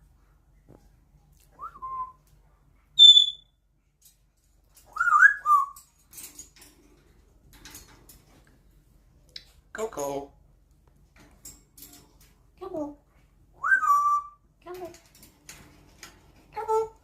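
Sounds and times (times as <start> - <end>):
parrot imitating a high beep: 3.0 - 3.4
parrot whistling: 3.0 - 3.4, 13.6 - 14.4.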